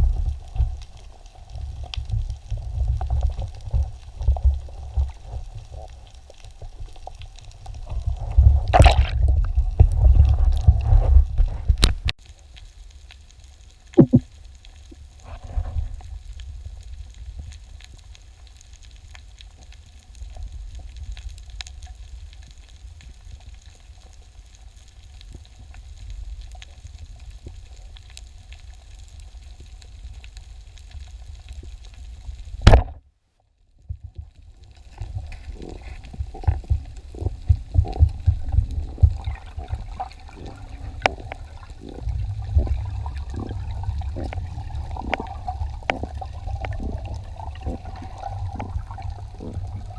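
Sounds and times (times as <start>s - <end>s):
underwater rushing rumble: 0.0s - 6.0s, 7.0s - 12.1s, 35.0s - 49.9s
sharp knocks and clicks: 14.0s - 14.2s.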